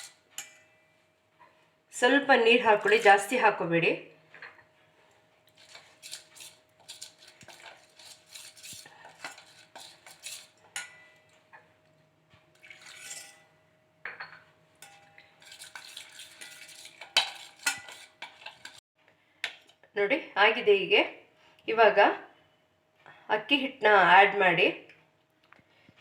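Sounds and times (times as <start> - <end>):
spoon scraping and clinking bowl: 0.0 - 0.8, 2.7 - 3.3, 5.5 - 11.3, 12.6 - 13.5, 14.1 - 18.8.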